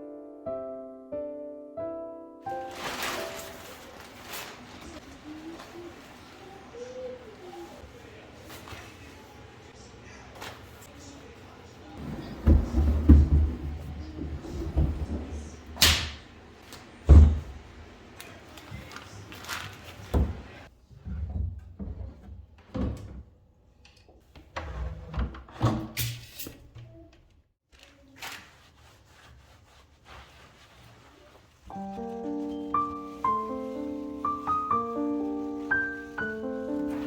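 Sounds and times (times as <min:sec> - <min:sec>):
household knocks and thumps: 0:12.0 - 0:16.0.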